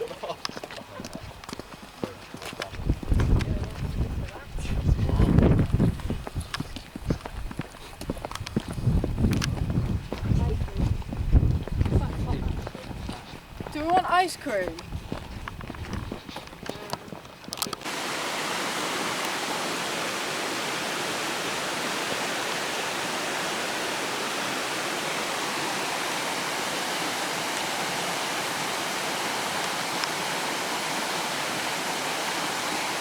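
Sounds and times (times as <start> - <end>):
rushing flowing water: 17.6 - 33.0.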